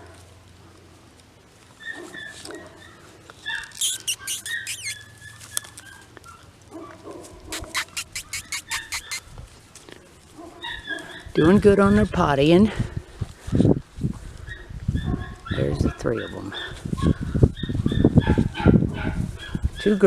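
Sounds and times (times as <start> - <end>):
puppies squeaking and whining: 1.8 - 6.5, 7.5 - 9.5, 10.6 - 11.3, 14.4 - 18.8.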